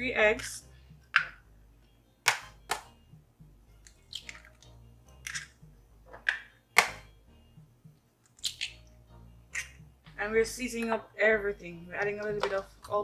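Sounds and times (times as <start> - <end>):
eggs cracking against bowl: 3.8 - 5.6, 8.2 - 8.9.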